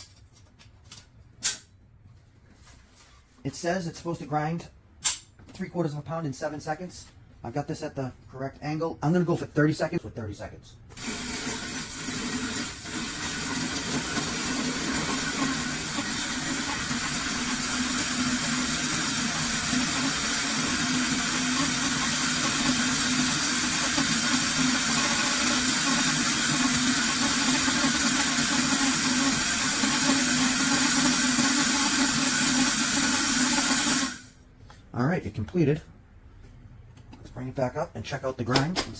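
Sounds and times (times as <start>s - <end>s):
electric herb grinder whirring: 11.0s - 34.3s.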